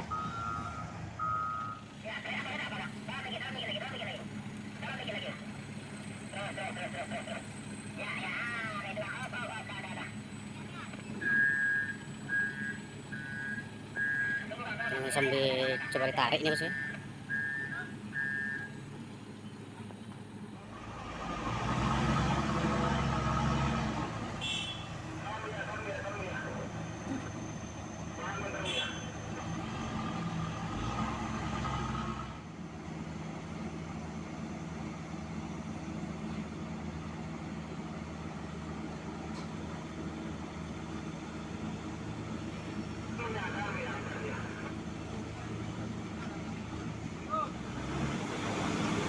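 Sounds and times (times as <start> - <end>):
diesel engine revving under load: 0.0 - 49.0
reversing alarm beep: 0.1 - 1.8, 10.9 - 18.8.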